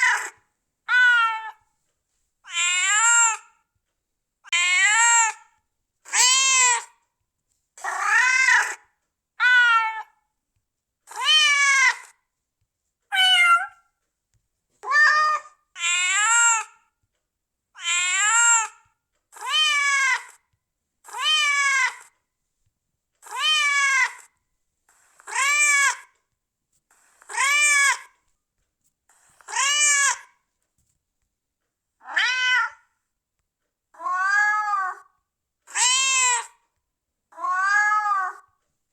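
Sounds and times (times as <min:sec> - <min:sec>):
cat meowing: 0:00.0 - 0:01.6, 0:02.5 - 0:03.5, 0:04.5 - 0:05.4, 0:06.2 - 0:06.9, 0:07.8 - 0:08.8, 0:09.4 - 0:10.2, 0:11.1 - 0:12.1, 0:13.1 - 0:13.8, 0:14.8 - 0:16.8, 0:17.8 - 0:18.8, 0:19.4 - 0:20.4, 0:21.1 - 0:22.1, 0:23.2 - 0:24.3, 0:29.4 - 0:30.3, 0:32.0 - 0:32.9, 0:34.0 - 0:35.1, 0:35.7 - 0:36.6, 0:37.3 - 0:38.5.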